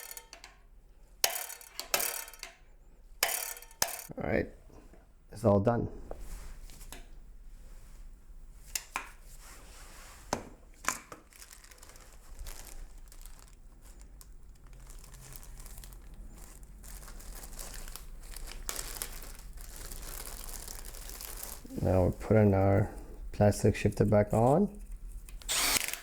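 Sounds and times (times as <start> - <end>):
soft crinkling rustle: 6.2 - 25.5.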